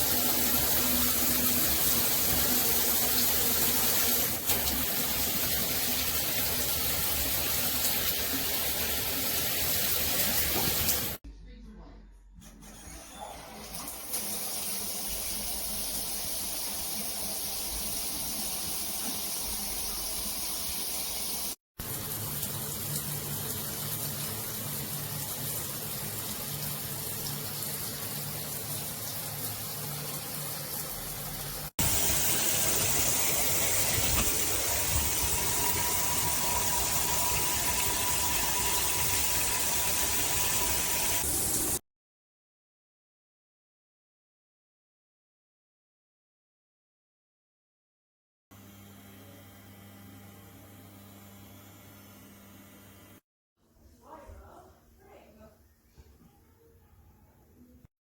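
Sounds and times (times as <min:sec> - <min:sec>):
shower water spraying: 0:00.0 - 0:11.2, 0:13.6 - 0:41.8.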